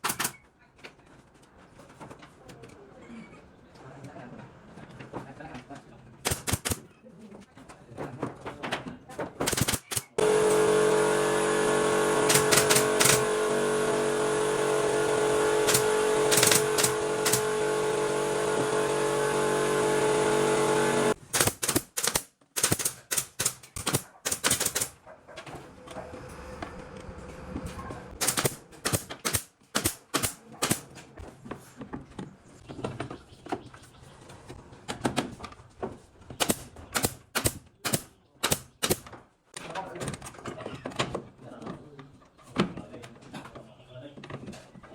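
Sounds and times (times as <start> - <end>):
power tool motor running: 10.1 - 21.2.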